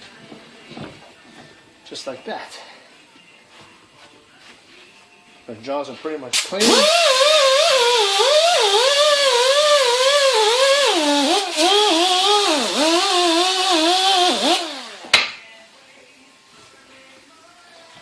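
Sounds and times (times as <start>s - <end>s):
electric power tool running: 6.6s - 15.1s.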